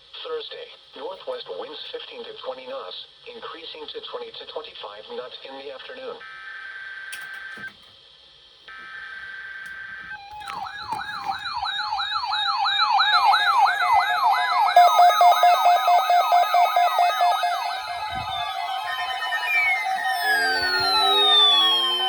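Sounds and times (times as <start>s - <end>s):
electronic siren sweeping: 9.2s - 22.0s
electronic alert tones: 10.2s - 22.0s
pulsing steady tone: 10.4s - 22.0s.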